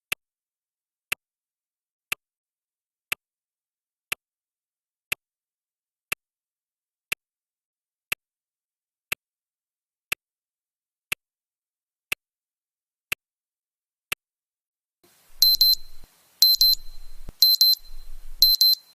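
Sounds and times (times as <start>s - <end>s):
clock ticking: 15.3s - 18.9s
digital alarm beeping: 15.4s - 18.9s.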